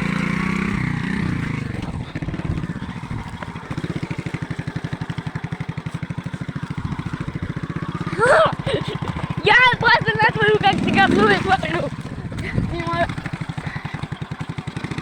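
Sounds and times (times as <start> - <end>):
moped engine idling: 0.0 - 15.0.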